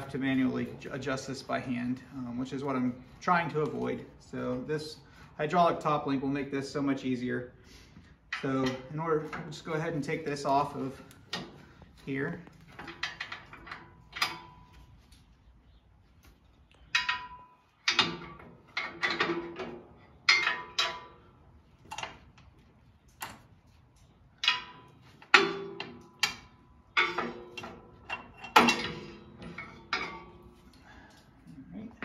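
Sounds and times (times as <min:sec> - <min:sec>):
metal clanks and clicks: 0:08.3 - 0:11.7, 0:12.4 - 0:14.8, 0:16.8 - 0:32.0.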